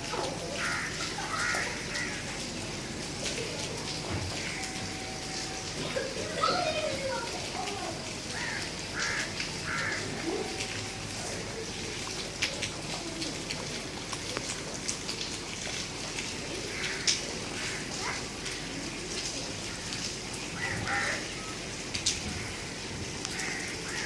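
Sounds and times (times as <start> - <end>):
raindrops tapping a surface: 0.0 - 24.0
steady rain falling: 0.0 - 24.0.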